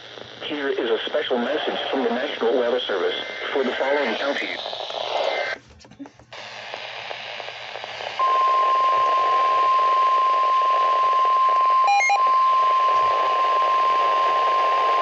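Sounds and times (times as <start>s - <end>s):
radio static hiss: 0.0s - 15.0s
steady alarm tone: 6.5s - 15.0s.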